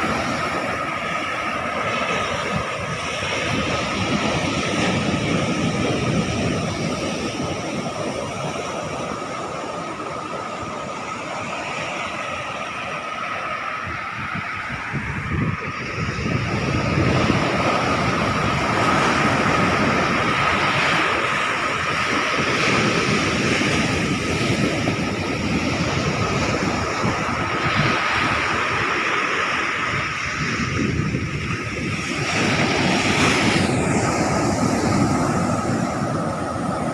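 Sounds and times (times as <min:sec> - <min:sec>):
ocean surf rushing: 0:00.0 - 0:36.9
wind buffeting microphone: 0:00.0 - 0:36.9.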